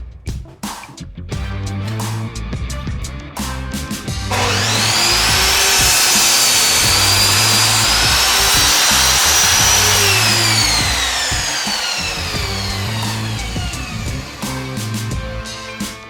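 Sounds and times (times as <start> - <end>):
miter saw motor whine: 4.2 - 15.6.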